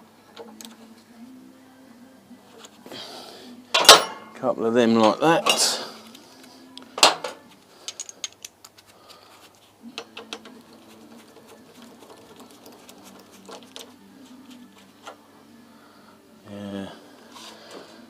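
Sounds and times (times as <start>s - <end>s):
metal tools and bolts clinking: 3.8s - 4.4s, 5.0s - 5.8s, 7.0s - 8.5s
sharp metal clank: 3.8s - 4.4s.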